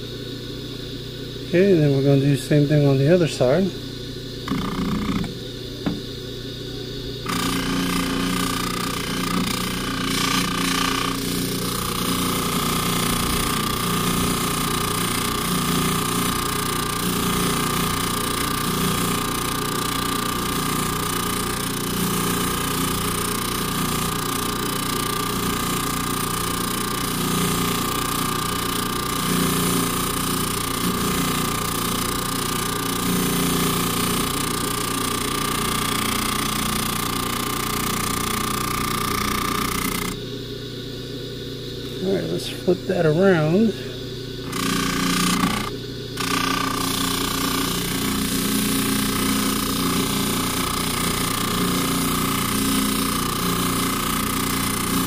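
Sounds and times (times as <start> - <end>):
polishing motor whining: 41.9 - 55.0.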